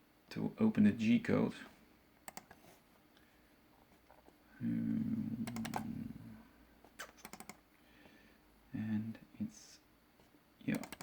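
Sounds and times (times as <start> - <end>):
computer keyboard clicking: 2.3 - 2.6, 5.4 - 5.9, 7.2 - 7.6, 10.7 - 11.0
man humming: 4.6 - 6.5.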